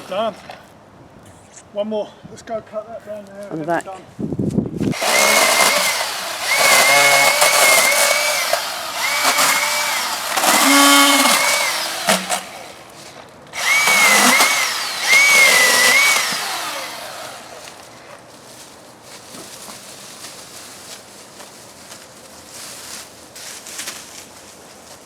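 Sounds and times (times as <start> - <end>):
battery chainsaw motor whine: 4.9 - 12.9, 13.6 - 17.8.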